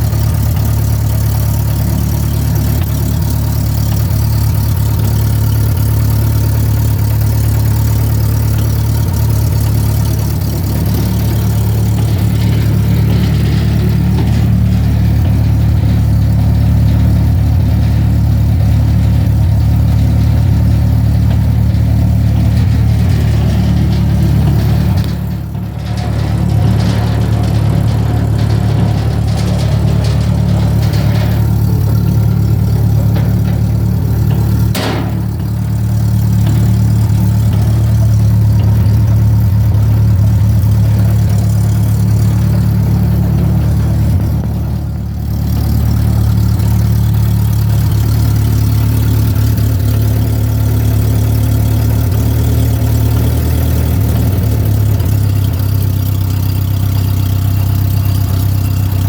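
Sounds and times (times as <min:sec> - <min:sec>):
pump engine humming: 0:00.0 - 0:59.0.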